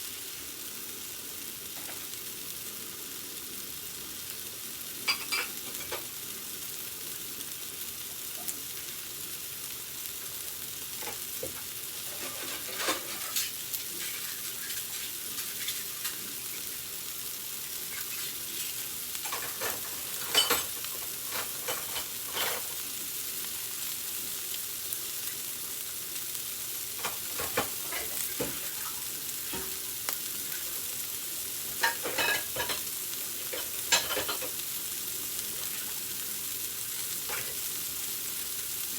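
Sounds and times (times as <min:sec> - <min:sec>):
food sizzling in a pan: 0:00.0 - 0:38.9
utensil scraping pan: 0:12.0 - 0:16.2.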